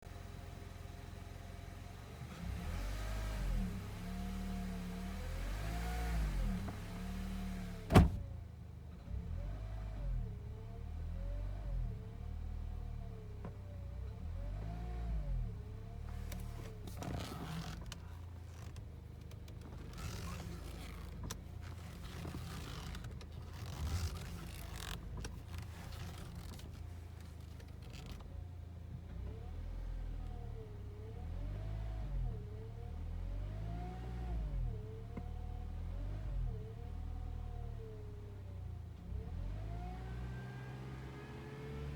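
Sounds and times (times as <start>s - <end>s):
scraping and rustling: 19.8s - 28.2s.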